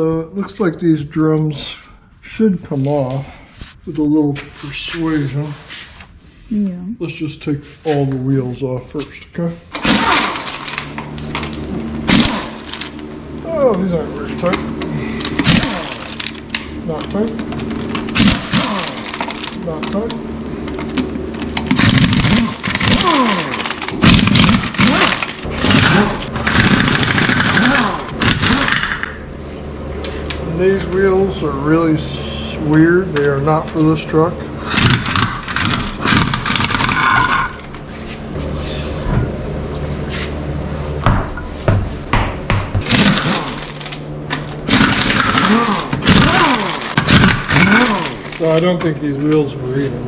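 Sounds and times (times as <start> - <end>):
impact wrench spinning: 9.7 - 11.0, 15.3 - 16.5, 20.7 - 29.2, 44.7 - 48.4.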